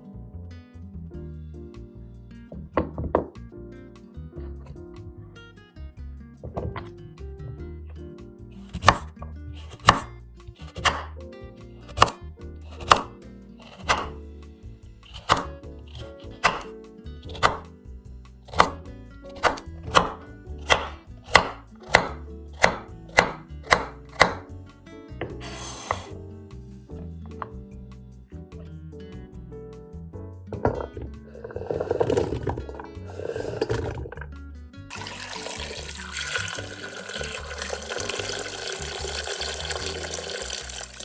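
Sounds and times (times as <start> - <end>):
soft music: 0.0 - 41.0
knife scrape: 8.6 - 11.1, 11.9 - 14.2, 15.0 - 16.7, 25.3 - 26.2, 30.8 - 34.1
knife chopping on cutting board: 8.6 - 11.2, 11.9 - 14.2, 15.0 - 17.7, 18.5 - 24.5, 25.2 - 26.2, 30.6 - 34.0.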